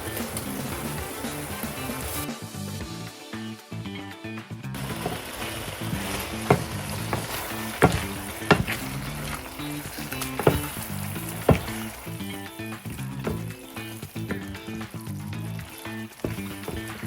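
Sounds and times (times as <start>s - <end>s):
utensil knocking against pan: 4.9s - 5.2s, 5.9s - 10.8s, 11.5s - 11.9s, 13.2s - 13.7s, 16.2s - 17.0s.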